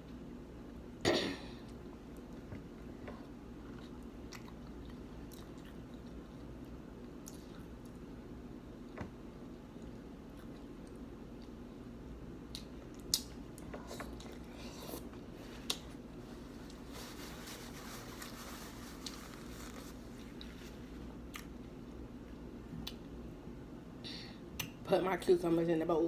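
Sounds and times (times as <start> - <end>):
person chewing food: 3.6 - 8.0, 9.7 - 11.6, 12.5 - 16.9, 18.6 - 21.6.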